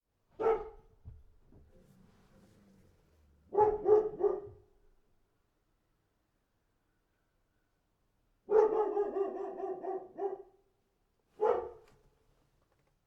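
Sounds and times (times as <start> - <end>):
dog barking: 0.4 - 0.9, 3.5 - 4.7, 8.5 - 10.6, 11.4 - 11.9.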